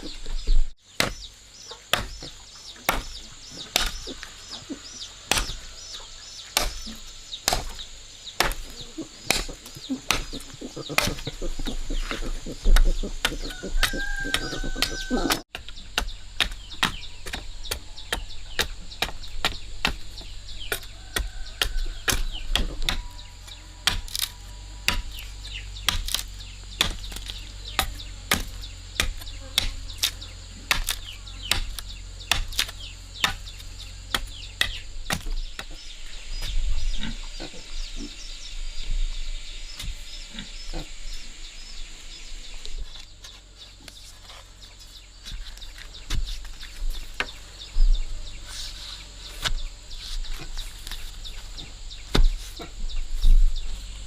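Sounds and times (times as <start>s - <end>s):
chickens clucking: 0.0s - 7.1s, 8.4s - 15.9s
sharp chopping knocks: 1.0s - 1.3s, 1.9s - 2.3s, 2.9s - 4.1s, 5.3s - 5.6s, 6.6s - 7.8s, 8.4s - 11.3s, 12.7s - 23.2s, 25.8s - 35.8s, 52.1s - 52.7s.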